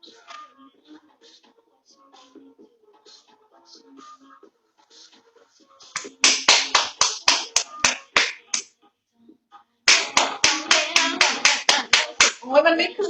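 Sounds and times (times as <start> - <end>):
faint background music: 0.0 - 13.0
sharp percussive cracks: 6.0 - 8.6, 9.9 - 12.4.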